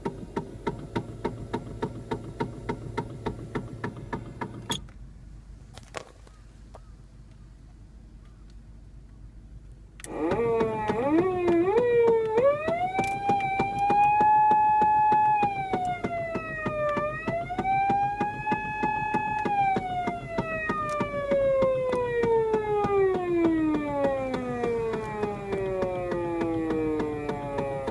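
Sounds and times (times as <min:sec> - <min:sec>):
electronic wail siren: 0:10.1 - 0:27.9.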